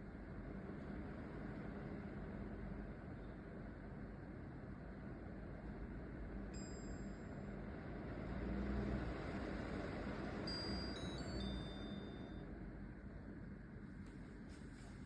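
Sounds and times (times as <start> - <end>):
air purifier fan humming: 0.0 - 15.0
falling electronic chime: 10.5 - 12.5.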